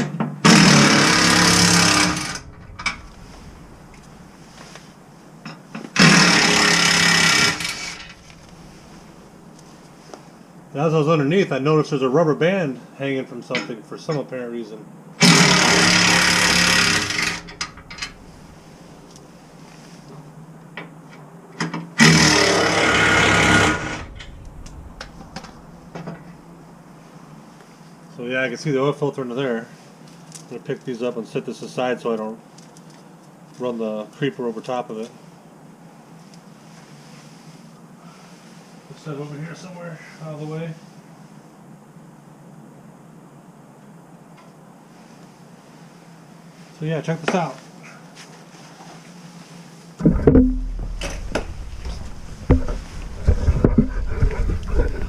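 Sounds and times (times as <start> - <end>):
power tool motor running: 0.4 - 3.1, 6.0 - 8.9, 15.2 - 18.1, 22.0 - 24.1
cordless power driver running: 6.0 - 8.1.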